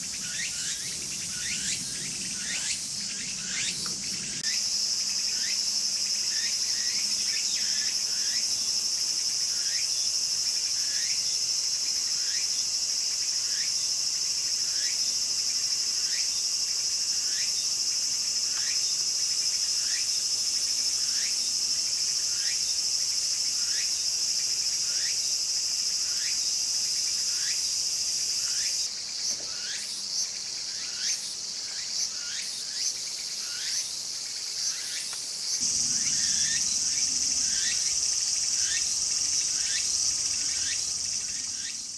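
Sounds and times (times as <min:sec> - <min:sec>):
cicada high buzz: 0:00.0 - 0:41.9
short rising cicada notes: 0:00.0 - 0:41.9.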